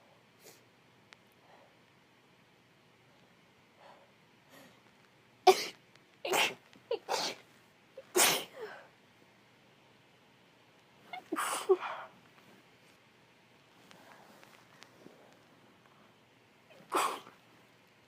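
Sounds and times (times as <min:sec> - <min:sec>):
woman sneezing: 0:08.1 - 0:08.7, 0:16.7 - 0:17.3.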